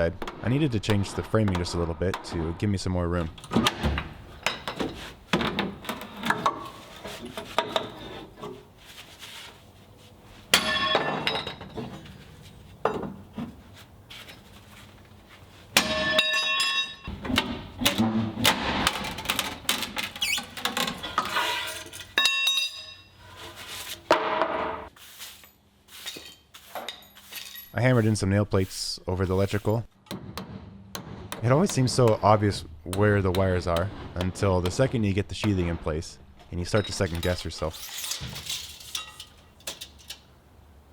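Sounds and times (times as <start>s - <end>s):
knocks and hammer blows: 17.1s - 19.5s, 30.0s - 35.7s.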